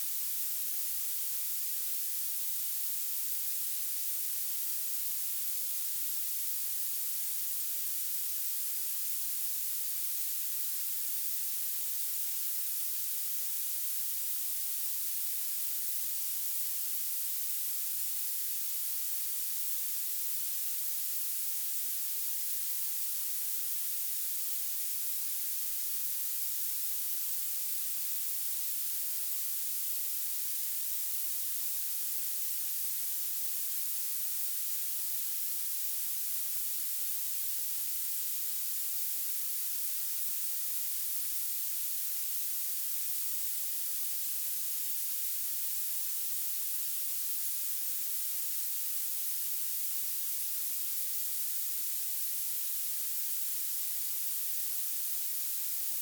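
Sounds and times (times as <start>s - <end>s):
high-pitched violet noise hiss: 17.4s - 56.0s.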